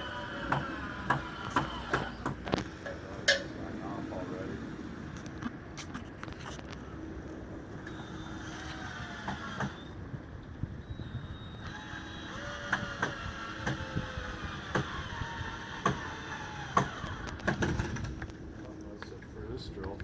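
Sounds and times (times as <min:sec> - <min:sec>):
power drill driving screws: 0:07.8 - 0:09.9, 0:11.6 - 0:18.1.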